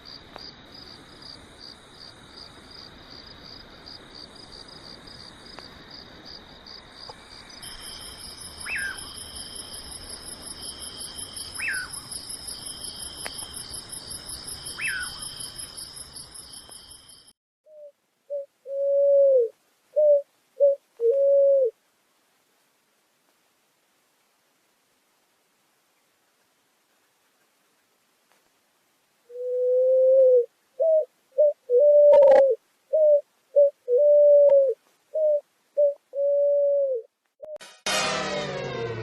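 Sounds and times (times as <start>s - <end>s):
insects trilling: 0.1s - 17.3s
loud clean electronic tones: 37.5s - 39.0s.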